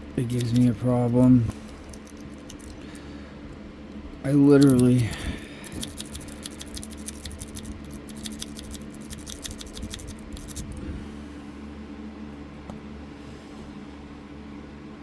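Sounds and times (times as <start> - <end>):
lock pick clicking in lock: 1.7 - 3.0, 4.6 - 10.7.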